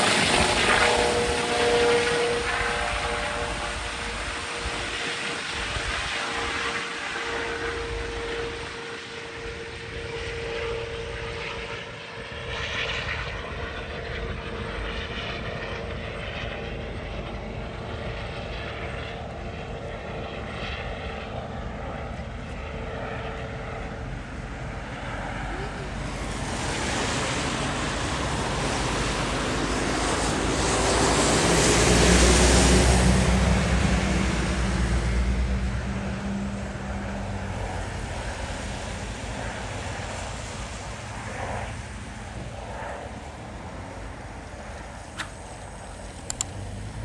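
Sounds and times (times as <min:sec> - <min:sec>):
steady whine: 0:00.0 - 0:20.7
helicopter rotor and turbine: 0:00.0 - 0:47.0.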